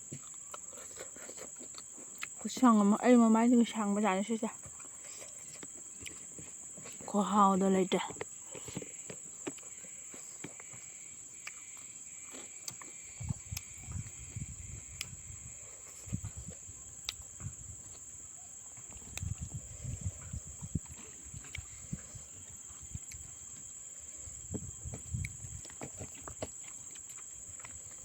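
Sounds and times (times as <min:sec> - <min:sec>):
chewing clicks and smacks: 0:11.4 - 0:14.2, 0:17.0 - 0:17.4, 0:20.2 - 0:22.0, 0:25.2 - 0:28.0.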